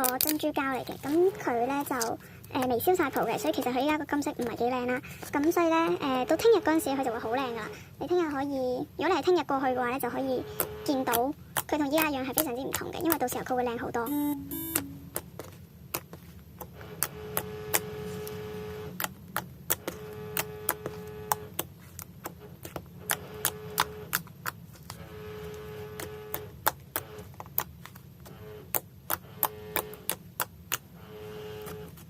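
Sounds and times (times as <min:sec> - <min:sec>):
faint held musical tone: 0:13.8 - 0:15.2.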